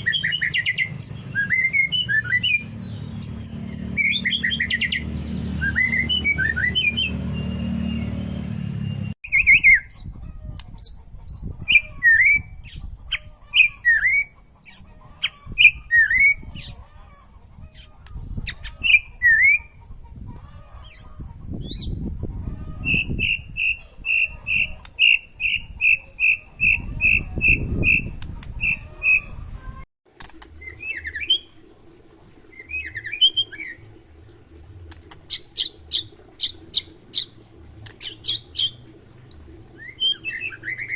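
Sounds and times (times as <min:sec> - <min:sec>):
songbird whistling song: 0:00.0 - 0:16.8, 0:22.7 - 0:29.4, 0:30.5 - 0:31.5, 0:32.5 - 0:33.8, 0:35.1 - 0:40.9.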